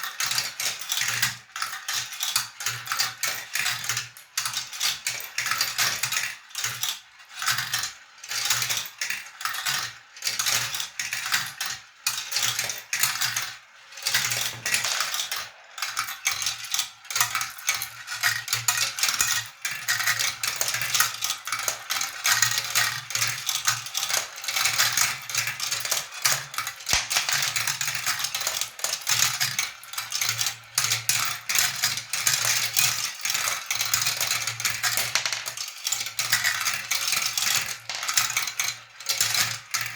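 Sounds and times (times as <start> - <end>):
marbles rolling and clicking: 12.4 - 18.7, 23.8 - 28.7, 33.8 - 39.4.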